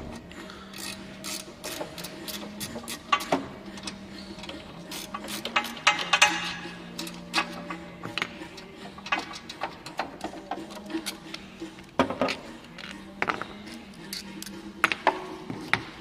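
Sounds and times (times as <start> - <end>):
spanner clicking on bolts: 0.7 - 11.4.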